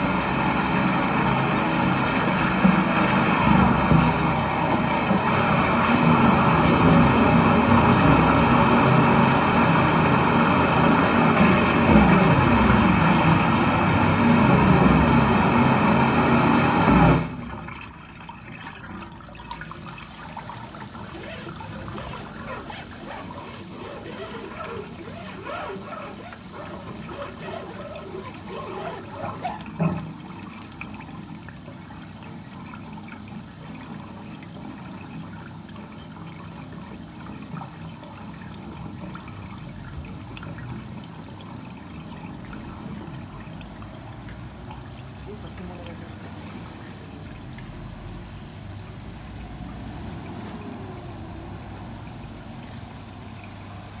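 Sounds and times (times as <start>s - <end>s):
water trickling through a drain: 0.0s - 54.0s.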